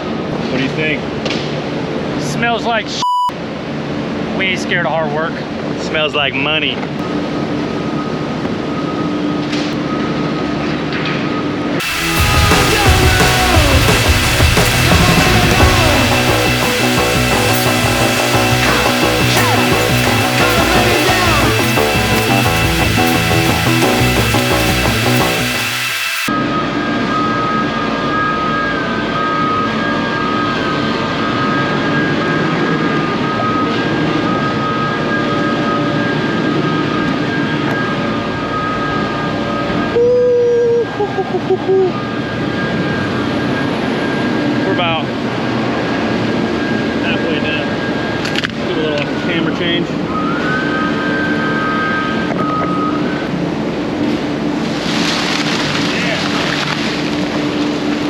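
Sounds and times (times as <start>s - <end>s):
loud held tone: 3.0s - 3.4s, 11.8s - 41.0s
faint steady whine: 6.9s - 40.0s
engine drone: 9.8s - 40.1s.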